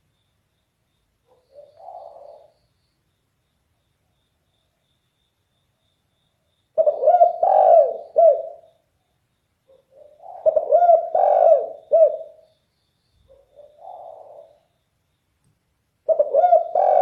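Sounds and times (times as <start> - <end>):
dove cooing: 1.3 - 2.5, 6.8 - 8.7, 9.7 - 12.4, 13.3 - 14.7, 16.1 - 17.0.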